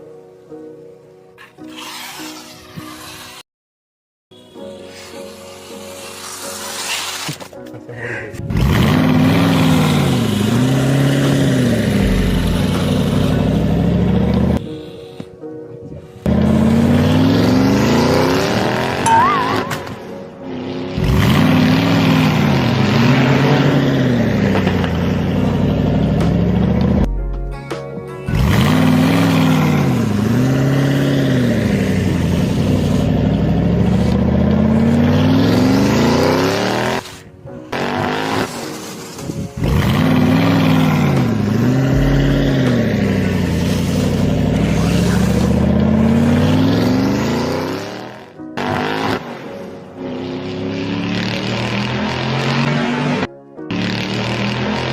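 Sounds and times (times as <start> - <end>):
engine revving: 8.4 - 14.7, 16.2 - 27.1, 28.3 - 54.9.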